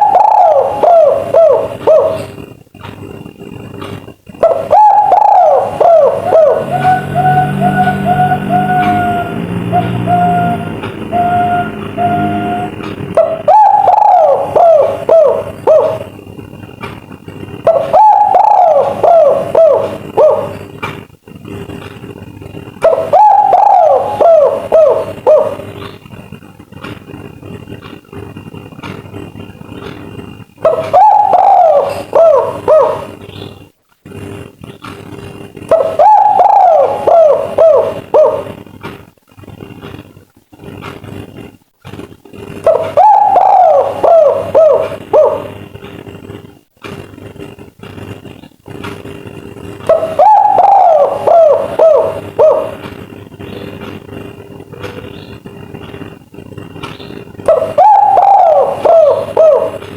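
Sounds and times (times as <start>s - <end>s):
dove cooing: 0.0s - 2.4s, 4.3s - 16.2s, 17.6s - 20.8s, 22.8s - 25.9s, 30.6s - 33.4s, 35.7s - 38.6s, 42.6s - 45.6s, 49.8s - 52.9s, 57.5s - 59.9s
low background noise: 0.0s - 59.9s.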